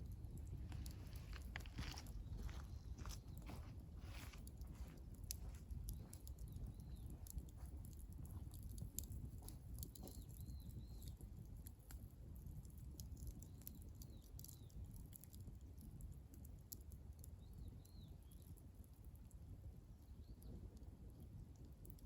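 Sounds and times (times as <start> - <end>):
bonfire crackling: 0.0 - 22.0
small bird chirping: 0.8 - 11.9, 12.7 - 15.4, 17.2 - 18.7.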